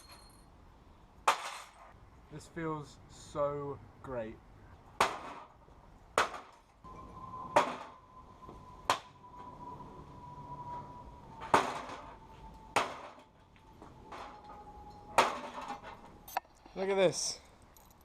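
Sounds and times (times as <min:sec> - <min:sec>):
faint steady high tone: 0:06.8 - 0:16.5.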